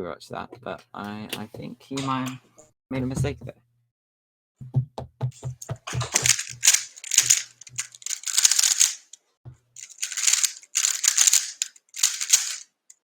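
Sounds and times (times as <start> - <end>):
puzzle cube clicking: 6.1 - 9.2, 9.8 - 12.6.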